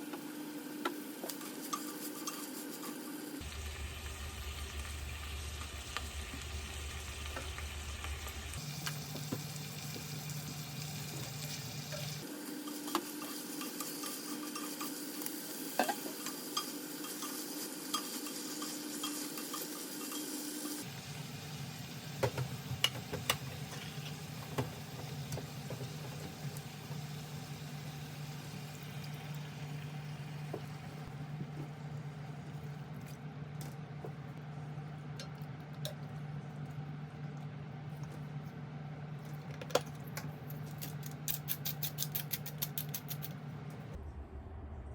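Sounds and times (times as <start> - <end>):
vegetables sizzling in frying pan: 1.0 - 31.1.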